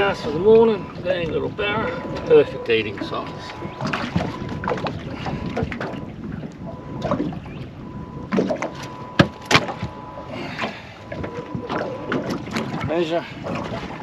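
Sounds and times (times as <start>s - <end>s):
scuffing and knocking in boat: 3.0s - 14.0s.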